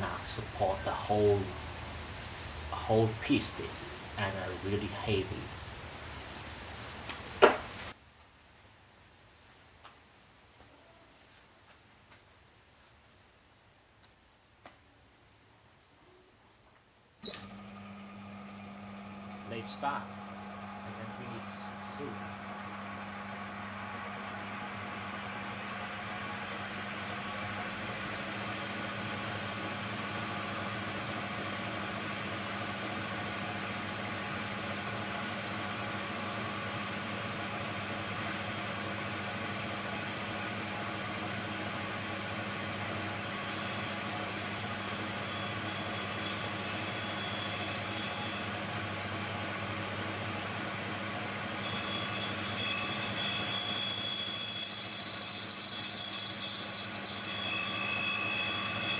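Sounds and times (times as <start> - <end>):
lathe motor humming: 17.3 - 58.9
metal cutting squeal: 43.4 - 48.7, 51.6 - 58.9.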